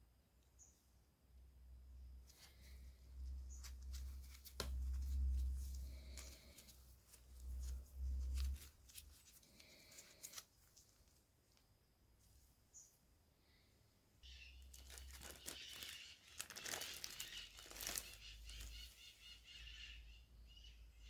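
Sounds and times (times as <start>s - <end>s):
packaging rustling: 14.6s - 18.9s
packaging clicks: 14.7s - 18.7s.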